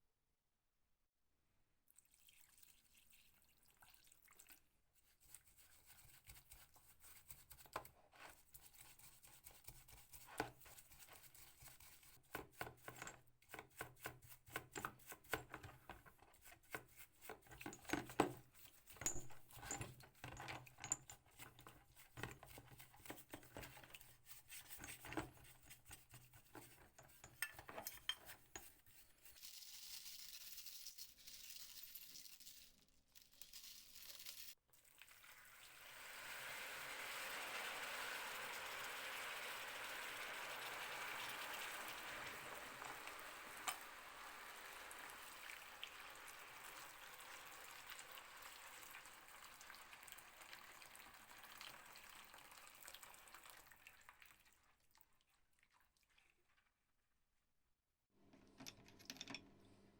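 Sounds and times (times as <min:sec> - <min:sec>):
small metal parts clinking: 0:29.4 - 0:34.6.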